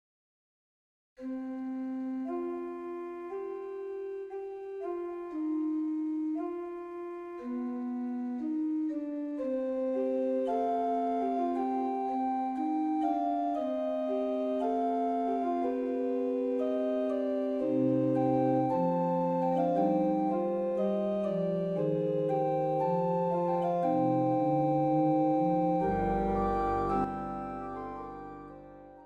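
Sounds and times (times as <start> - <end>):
held keyboard chords: 1.2 - 29.0
low bass notes: 17.6 - 29.0.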